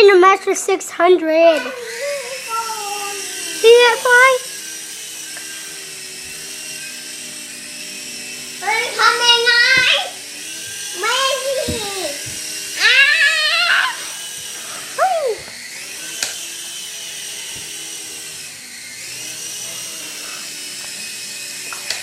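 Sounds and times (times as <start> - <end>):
toy helicopter motor whine: 0.0 - 22.0
child calling out: 2.4 - 4.3, 12.8 - 14.1, 15.0 - 15.4.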